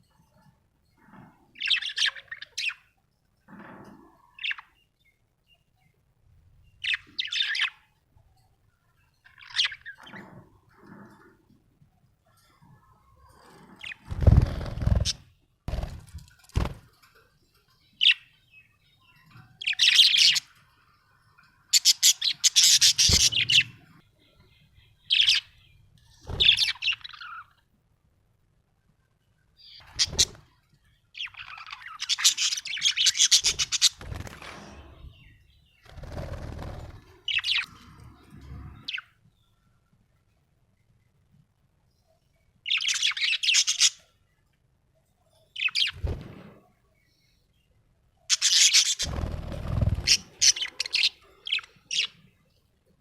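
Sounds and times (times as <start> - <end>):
budgerigar chirping and chattering: 21.8 - 23.8, 48.3 - 49.2.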